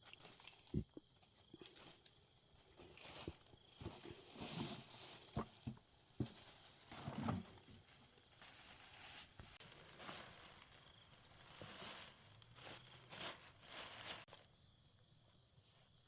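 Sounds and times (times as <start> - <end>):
high insect chirr: 0.0 - 16.0
scraping rustle: 2.7 - 14.4.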